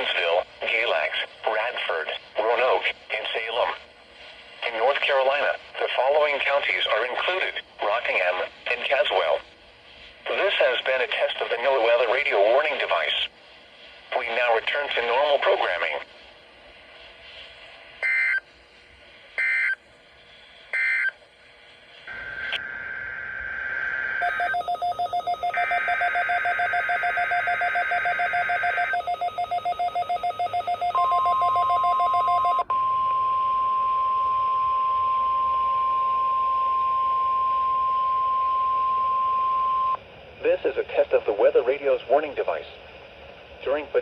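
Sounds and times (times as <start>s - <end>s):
steady radio warning tone: 0.0s - 13.3s, 14.0s - 16.1s, 16.9s - 21.2s, 22.0s - 42.7s
beeping alert tones: 24.2s - 33.2s.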